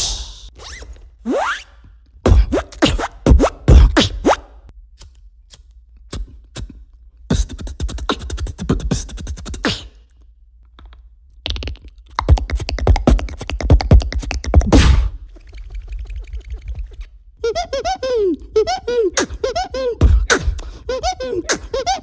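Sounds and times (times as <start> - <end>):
beatbox clicks and rattles: 11.4 - 14.7.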